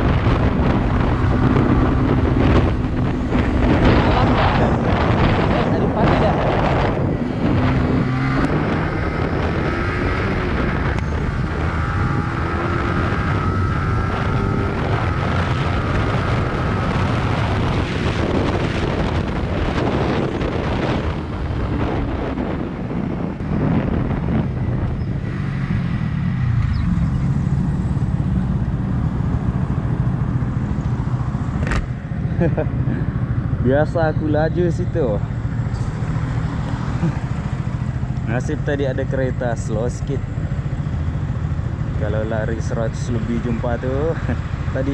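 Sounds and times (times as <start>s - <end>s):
motorcycle engine running: 0.0s - 44.9s
wind noise on microphone: 0.0s - 44.9s.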